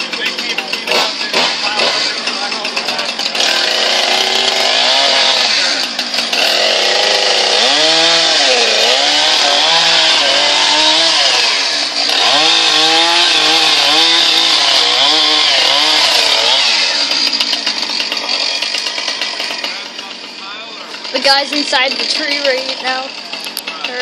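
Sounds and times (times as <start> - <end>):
chainsaw cutting tree: 0.0 - 24.0.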